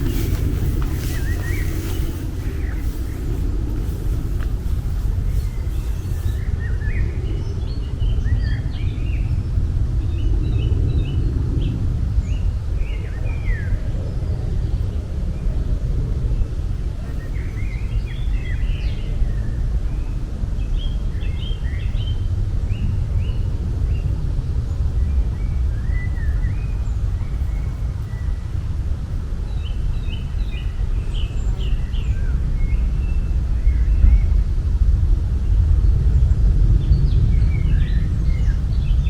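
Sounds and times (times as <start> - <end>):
small birds chirping: 0.0 - 9.3
low background noise: 0.0 - 39.0.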